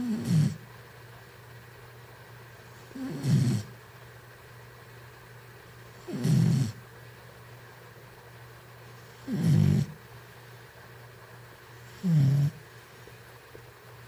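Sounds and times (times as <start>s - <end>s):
pet snoring: 0.0s - 0.6s, 2.8s - 3.8s, 5.9s - 6.8s, 9.0s - 10.0s, 11.8s - 12.7s.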